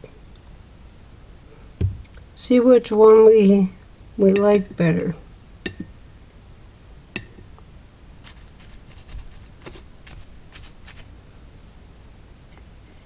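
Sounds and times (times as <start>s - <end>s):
glassy clink: 4.4s - 4.8s, 5.7s - 5.9s, 7.2s - 7.4s.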